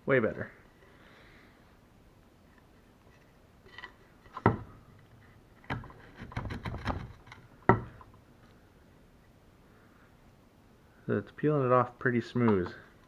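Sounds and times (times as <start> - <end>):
crackling clicks and scrapes: 2.4 - 7.5
sharp knocks: 5.7 - 8.0.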